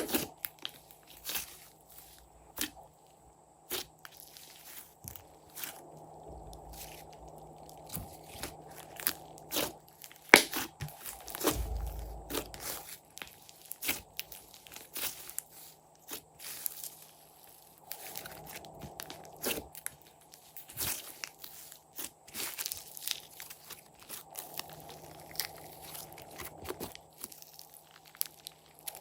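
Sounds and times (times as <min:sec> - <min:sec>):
dull thump: 0:11.4 - 0:12.7.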